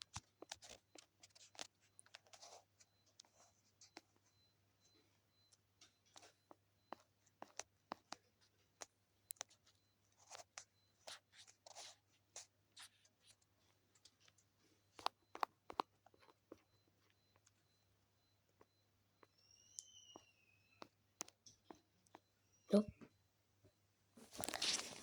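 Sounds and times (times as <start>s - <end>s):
pencil scratching strokes: 24.2s - 25.0s.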